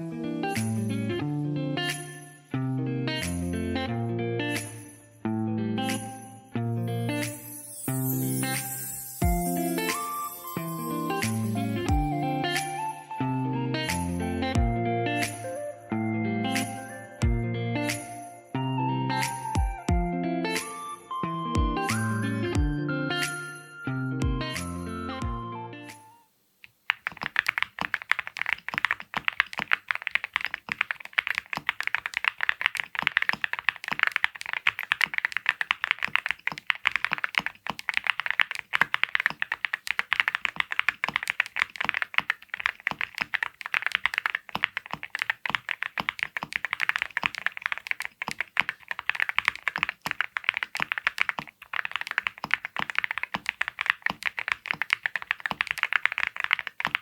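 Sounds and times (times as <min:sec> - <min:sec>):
mechanical keyboard typing: 0:26.8 - 0:57.0.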